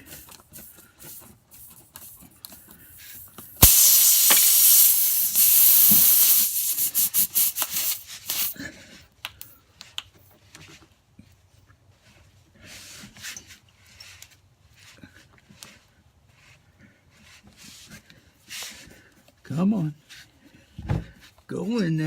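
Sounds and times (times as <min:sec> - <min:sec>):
air hissing out of tire: 0:00.0 - 0:08.6
sharp click: 0:03.4 - 0:08.5.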